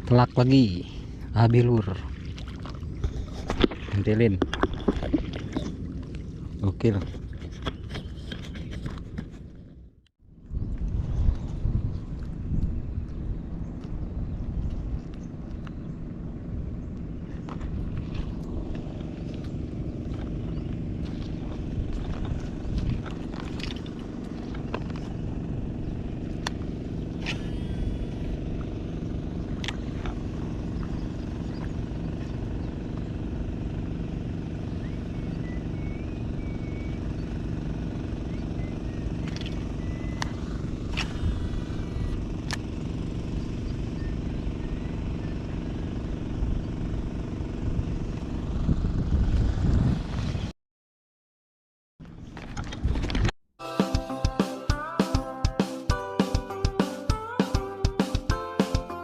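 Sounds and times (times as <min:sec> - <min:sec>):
low rumble: 0:10.2 - 0:45.1
small engine running: 0:13.5 - 0:50.4.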